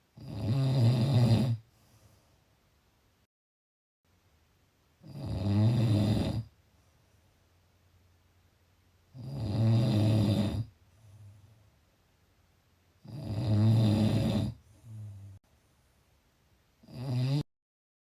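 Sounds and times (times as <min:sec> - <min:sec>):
loud snoring: 0:00.2 - 0:01.6, 0:05.0 - 0:06.5, 0:09.1 - 0:10.8, 0:13.0 - 0:15.4, 0:16.8 - 0:17.5
soft breath-snore: 0:00.2 - 0:02.4, 0:05.0 - 0:06.5, 0:09.1 - 0:11.6, 0:13.0 - 0:15.4, 0:16.8 - 0:17.5.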